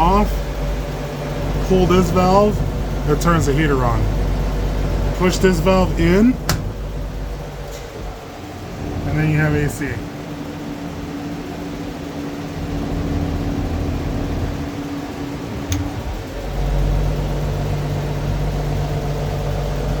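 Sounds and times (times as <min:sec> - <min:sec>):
car engine idling: 0:00.0 - 0:20.0
sharp click: 0:15.7 - 0:16.2.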